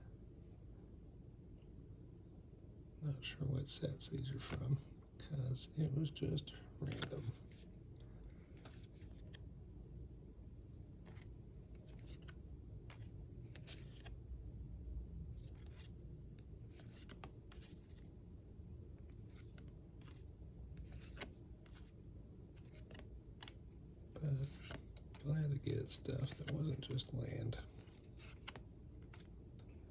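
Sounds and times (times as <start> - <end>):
low steady hum: 0.0 - 29.9
trading cards flicking and rustling: 6.8 - 9.5, 11.0 - 14.2, 15.4 - 18.2, 18.9 - 29.9.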